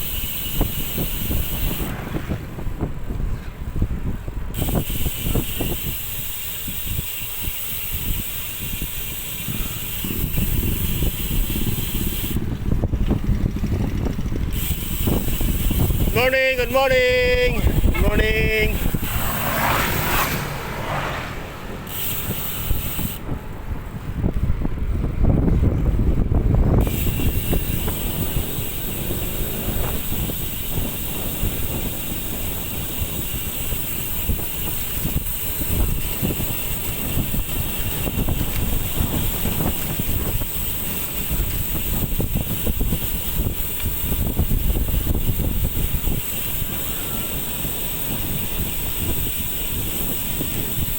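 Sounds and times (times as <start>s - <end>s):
vehicle road noise: 0.0s - 50.9s
wind buffeting microphone: 0.0s - 50.9s.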